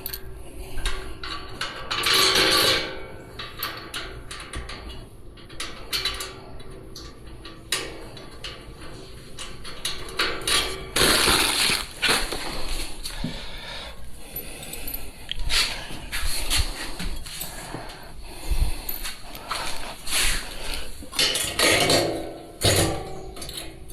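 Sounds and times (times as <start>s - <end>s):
metal parts clinking: 0.0s - 0.3s.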